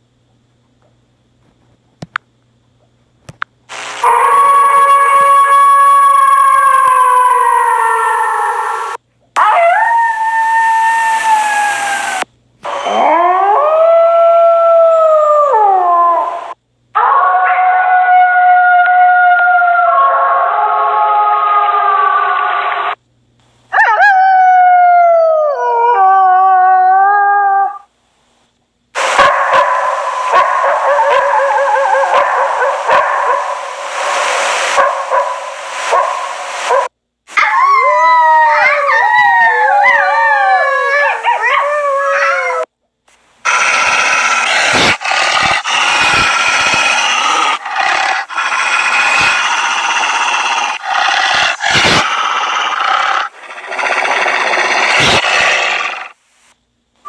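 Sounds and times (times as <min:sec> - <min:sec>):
wolf yips: 0:11.3 - 0:13.3, 0:43.5 - 0:56.2.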